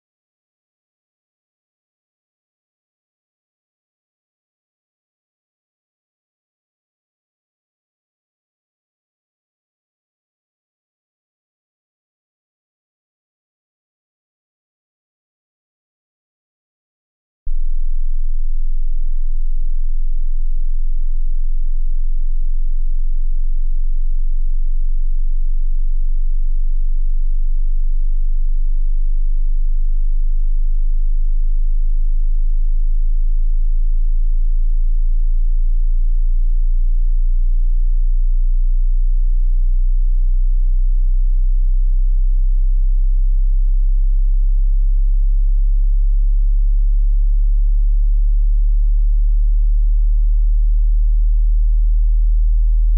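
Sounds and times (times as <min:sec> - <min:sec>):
low sine test tone: 0:17.5 - 0:52.9.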